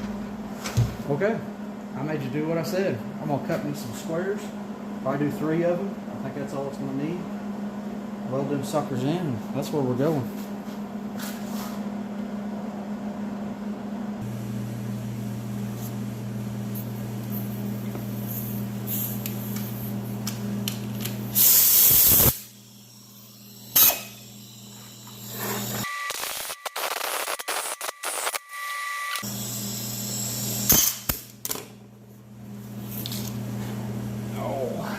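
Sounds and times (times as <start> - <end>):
low machine hum: 0.0 - 25.9, 29.2 - 34.9
choppy on-and-off noise: 14.2 - 28.5
burst of hiss: 21.4 - 22.6.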